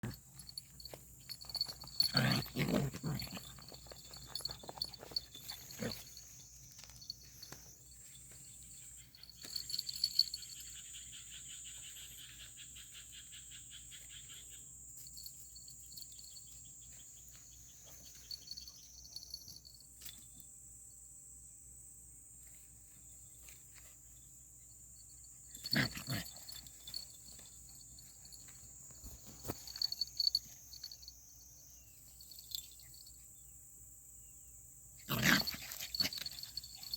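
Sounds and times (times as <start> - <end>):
puppies growling and yelping: 1.4 - 6.2, 25.6 - 27.4, 35.1 - 36.9.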